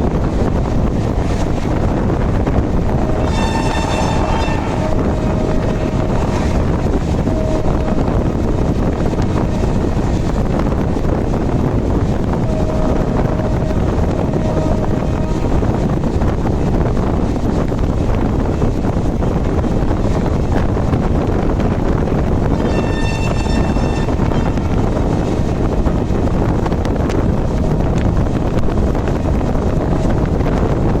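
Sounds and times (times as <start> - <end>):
vehicle rumble: 0.0 - 22.6
wind buffeting microphone: 0.0 - 31.0
faint held tones: 3.0 - 10.0.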